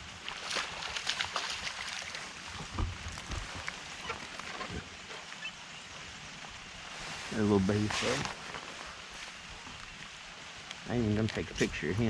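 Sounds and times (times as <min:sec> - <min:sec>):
rain hiss: 0:00.0 - 0:12.0.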